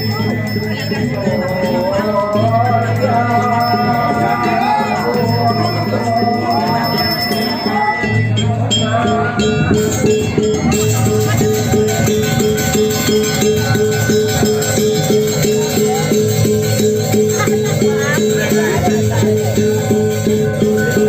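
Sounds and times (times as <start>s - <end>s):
pitch-sliding singing: 0.2s - 12.4s.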